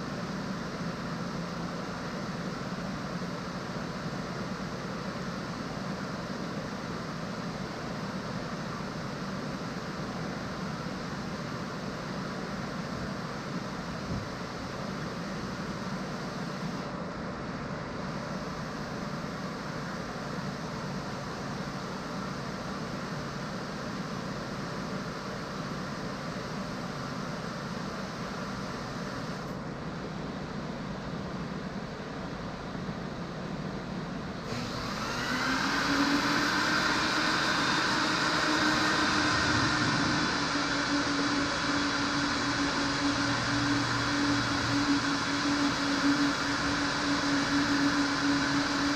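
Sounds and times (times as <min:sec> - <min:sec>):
electric motor whining and humming: 0:34.5 - 0:48.9
machine running: 0:34.5 - 0:48.9.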